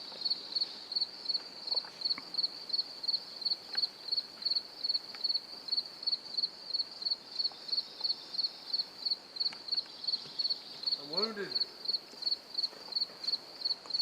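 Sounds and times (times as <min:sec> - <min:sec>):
insect chirping: 0:00.0 - 0:14.0
faint clicks: 0:09.4 - 0:10.4.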